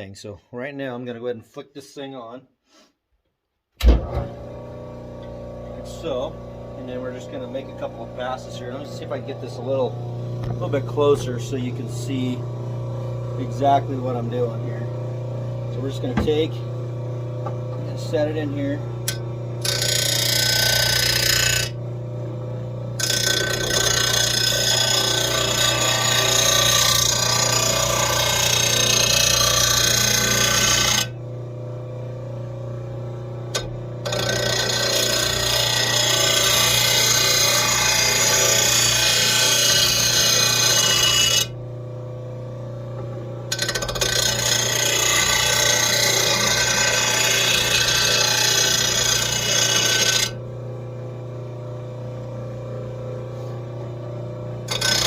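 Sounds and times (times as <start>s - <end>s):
grinder motor hum: 3.8s - 55.0s
metal blade grinding on stone: 19.1s - 21.8s, 23.0s - 31.1s, 33.6s - 41.5s, 43.5s - 50.4s, 54.7s - 55.0s.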